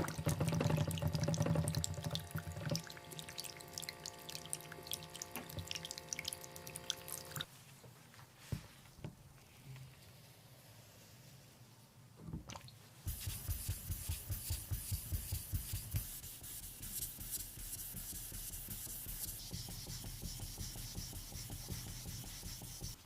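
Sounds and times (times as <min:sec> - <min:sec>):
hand sanding strokes: 0:13.1 - 0:23.0.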